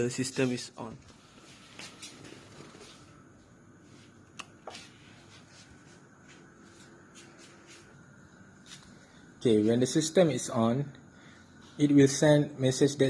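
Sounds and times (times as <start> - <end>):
faint rustling and handling: 0.4 - 9.9.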